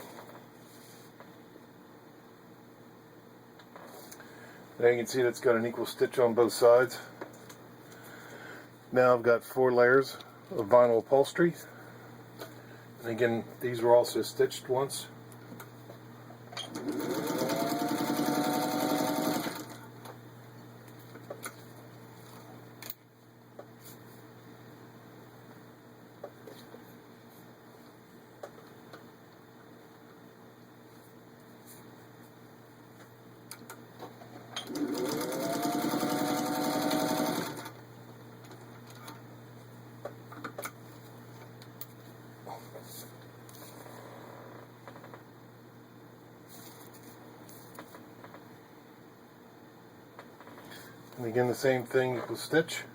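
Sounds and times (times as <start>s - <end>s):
sewing machine stitching: 16.6s - 19.8s, 34.6s - 37.8s.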